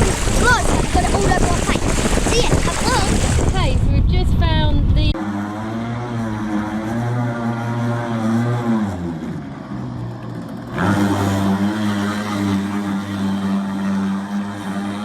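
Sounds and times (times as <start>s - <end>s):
boat engine revving: 0.0s - 3.9s, 5.0s - 15.0s
water rushing: 0.0s - 3.9s
wind rushing: 0.0s - 5.2s.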